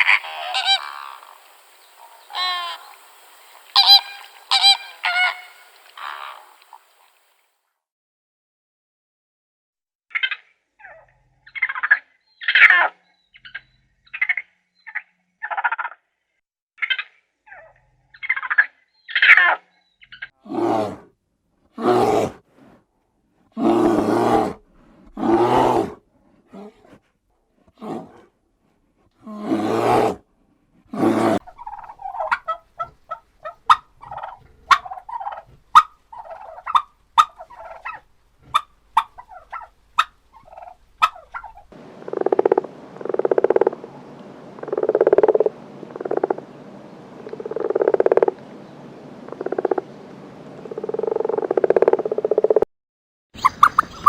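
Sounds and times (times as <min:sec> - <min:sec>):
harsh animal calls: 0:00.0 - 0:06.9, 0:23.6 - 0:27.0, 0:29.2 - 0:30.2, 0:30.9 - 0:43.8
drawn-out animal calls: 0:00.0 - 0:07.0.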